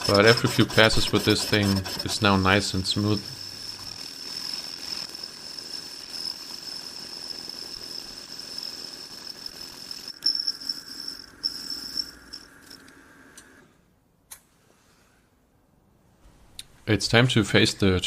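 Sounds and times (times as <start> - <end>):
metal scraping and clatter: 0.0 - 10.2
metal lathe whining: 0.0 - 13.6.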